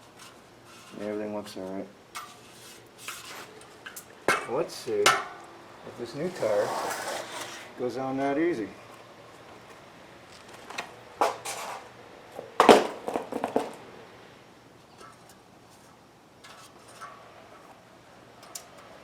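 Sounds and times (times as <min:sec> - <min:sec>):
tire rubbing and knocking: 0:10.4 - 0:13.9.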